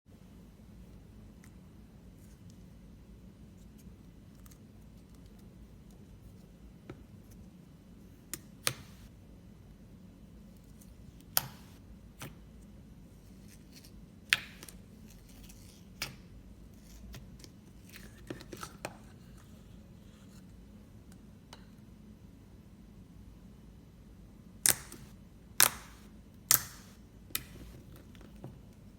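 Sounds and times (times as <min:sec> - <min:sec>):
sticky slime clicks and pops: 0:24.6 - 0:27.5.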